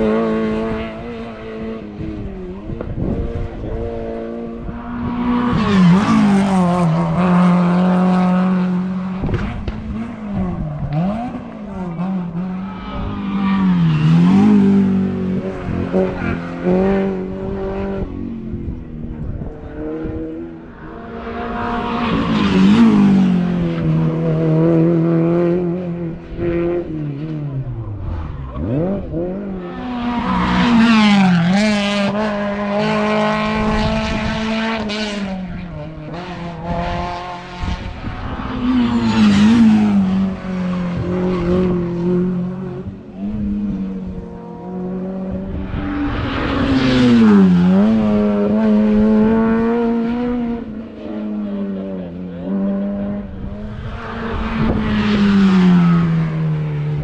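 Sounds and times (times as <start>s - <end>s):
race car engines revving: 0.0s - 57.0s
car passing by: 26.5s - 42.9s, 44.8s - 51.7s, 53.2s - 57.0s.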